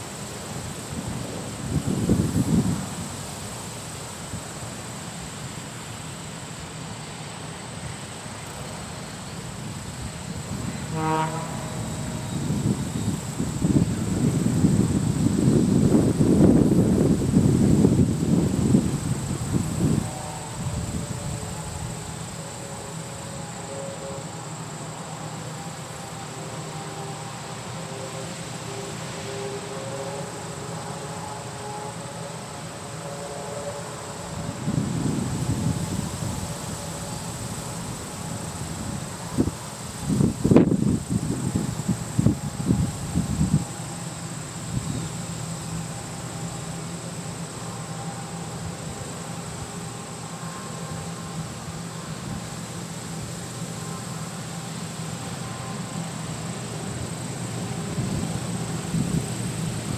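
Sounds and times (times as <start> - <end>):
combine harvester droning: 0.0 - 59.9
short horn toot: 10.6 - 13.2.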